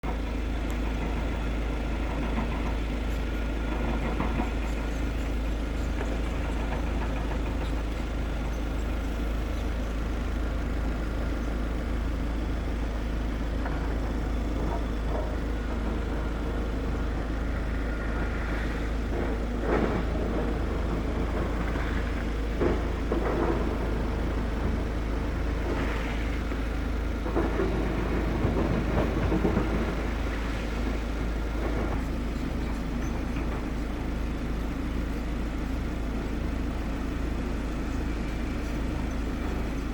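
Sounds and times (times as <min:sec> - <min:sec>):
heavy diesel machinery rumbling: 0:00.0 - 0:39.9.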